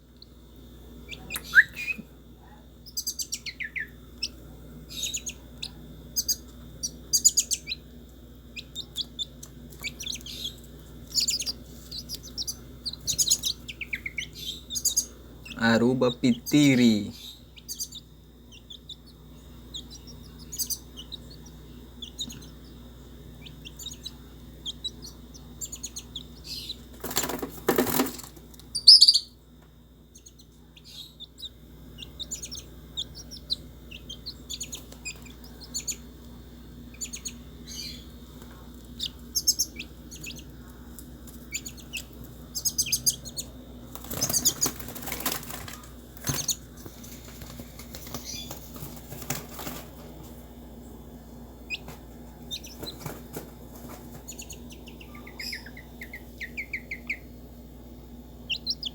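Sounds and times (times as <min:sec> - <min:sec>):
steady low hum: 0:00.0 - 0:58.9
bird chirping: 0:01.1 - 0:02.0, 0:02.8 - 0:07.9, 0:08.5 - 0:26.9, 0:28.7 - 0:29.4, 0:30.1 - 0:36.1, 0:36.9 - 0:38.3, 0:38.9 - 0:40.5, 0:41.4 - 0:46.7, 0:48.0 - 0:48.7, 0:51.7 - 0:53.2, 0:53.8 - 0:57.4, 0:58.4 - 0:58.9.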